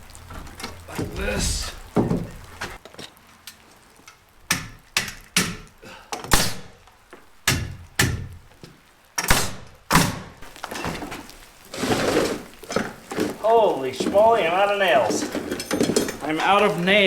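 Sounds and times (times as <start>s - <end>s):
nails hammered into wood: 4.5s - 6.7s, 7.4s - 8.4s, 9.2s - 10.4s.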